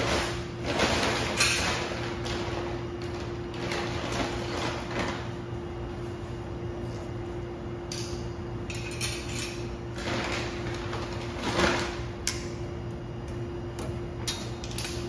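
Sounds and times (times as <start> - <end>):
steady hum: 0.0 - 15.0
metal parts clinking: 7.9 - 9.7.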